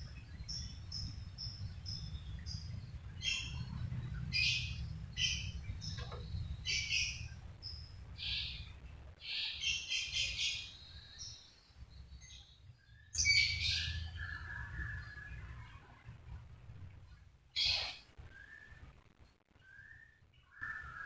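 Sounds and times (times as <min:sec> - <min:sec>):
bird singing chirps and whistles: 0:12.9 - 0:15.6, 0:19.6 - 0:21.0.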